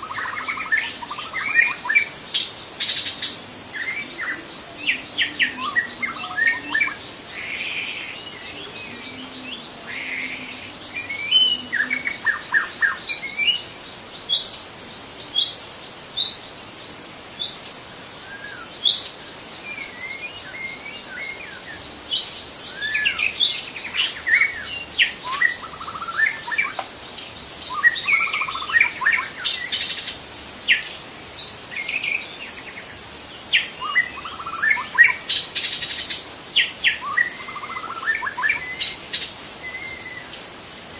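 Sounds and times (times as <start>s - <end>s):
high-pitched insect drone: 0.0s - 40.9s
bird singing whistles and chirps: 2.8s - 13.6s, 17.4s - 26.8s, 27.6s - 30.9s, 33.5s - 40.3s.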